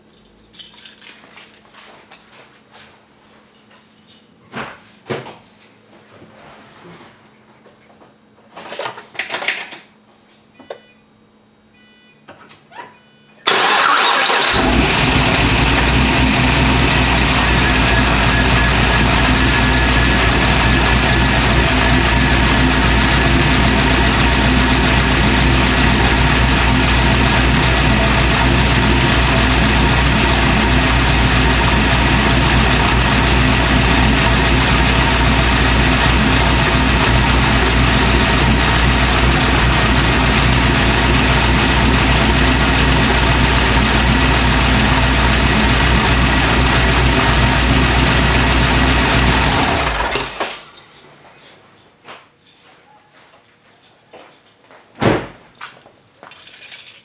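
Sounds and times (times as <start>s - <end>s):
car engine cranking and idling: 13.5s - 50.7s.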